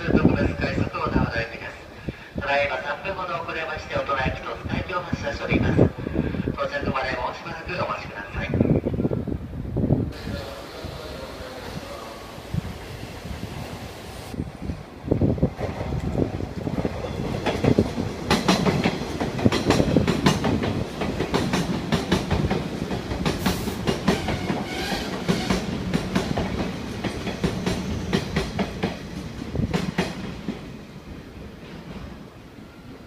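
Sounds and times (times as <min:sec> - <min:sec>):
low train rumble: 0:00.0 - 0:33.0
train wheels clicking over rail joints: 0:15.6 - 0:30.7.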